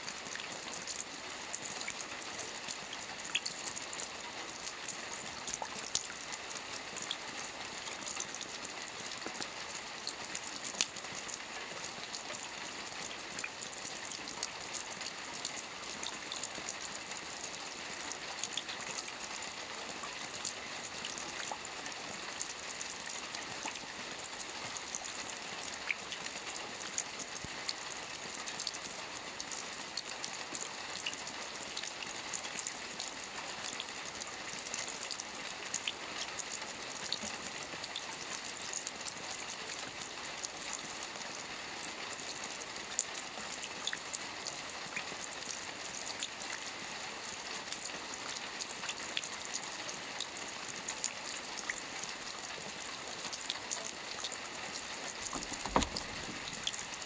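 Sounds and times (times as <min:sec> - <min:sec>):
steady rain falling: 0:00.0 - 0:57.0
loud knock: 0:55.4 - 0:56.6.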